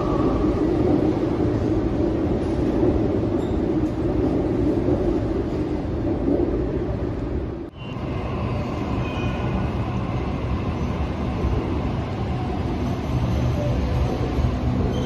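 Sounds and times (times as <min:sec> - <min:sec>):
electric train rumbling: 0:00.0 - 0:15.0.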